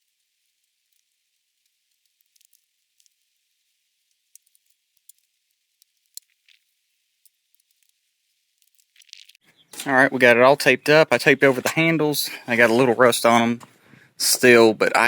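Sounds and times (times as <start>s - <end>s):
faint high-pitched clicks: 4.3s - 8.0s.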